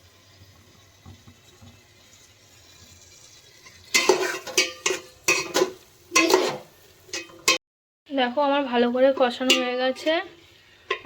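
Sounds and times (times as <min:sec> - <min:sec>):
spatula scraping cooking pot: 0:03.6 - 0:07.6.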